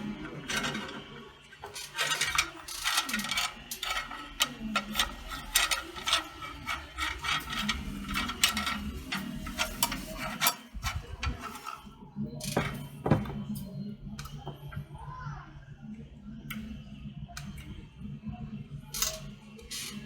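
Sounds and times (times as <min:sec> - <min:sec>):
metal clicks and rattles of saw parts: 0:01.6 - 0:12.9.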